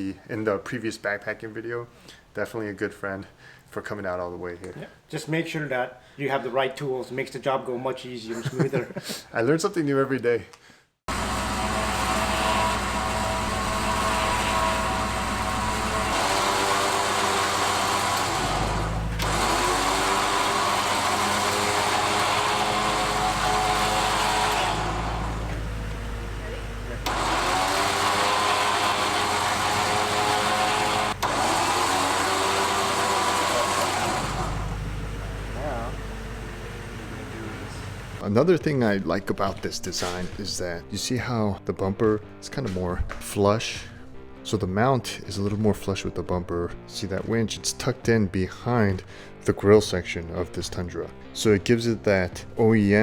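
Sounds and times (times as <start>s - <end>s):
motor running: 11.1s - 38.2s.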